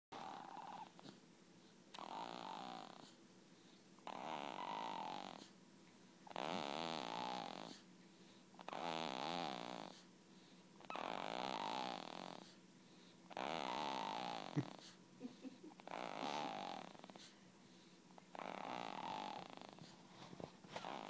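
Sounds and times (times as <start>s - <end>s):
person snoring: 6.3s - 7.8s, 8.6s - 10.0s, 10.9s - 12.5s, 13.3s - 14.9s, 15.8s - 17.3s, 18.3s - 19.9s.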